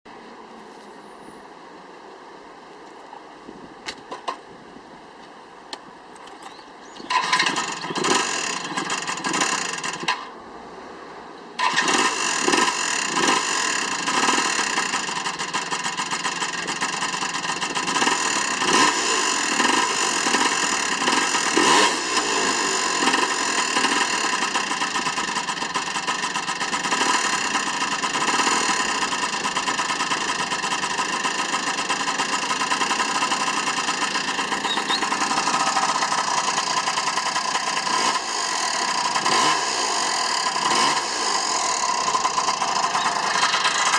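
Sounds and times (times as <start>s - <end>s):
motorcycle engine running: 7.0s - 10.3s, 11.6s - 43.9s
motorcycle throttle blips: 28.1s - 39.7s, 40.4s - 43.9s.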